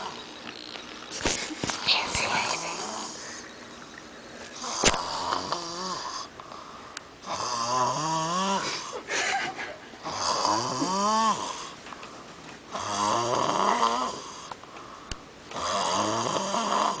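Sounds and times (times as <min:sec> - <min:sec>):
person snoring: 0:02.3 - 0:03.4, 0:04.6 - 0:06.3, 0:07.2 - 0:09.0, 0:10.0 - 0:11.8, 0:12.7 - 0:14.5, 0:15.5 - 0:17.0.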